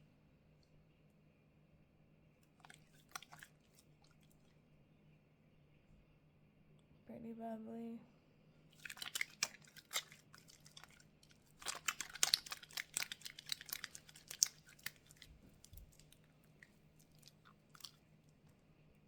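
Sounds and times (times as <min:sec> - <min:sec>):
hands rubbing soap lather: 0:02.6 - 0:03.9, 0:08.7 - 0:18.1.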